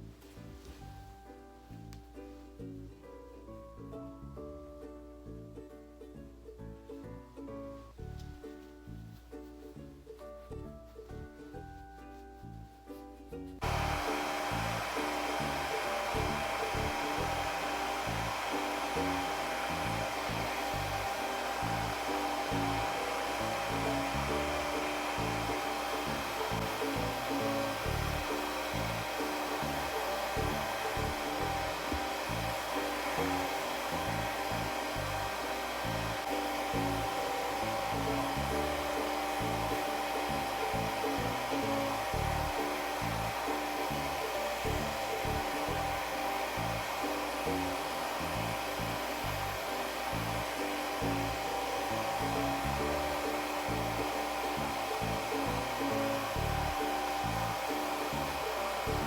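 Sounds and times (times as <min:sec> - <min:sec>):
background music: 0:00.0 - 0:59.0
hair dryer blowing: 0:13.6 - 0:59.0.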